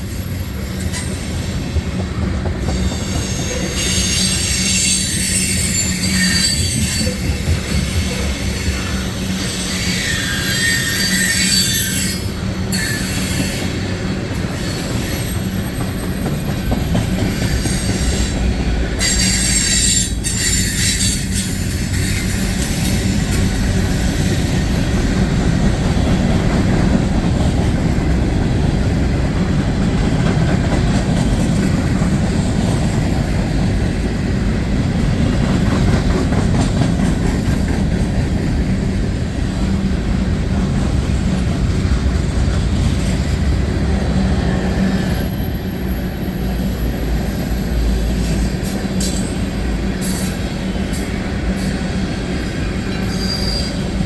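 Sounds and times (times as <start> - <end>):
high-pitched wheel squeal: 0.0 - 1.7, 2.7 - 27.5, 44.1 - 50.6
freight train cars rumbling: 0.0 - 54.0.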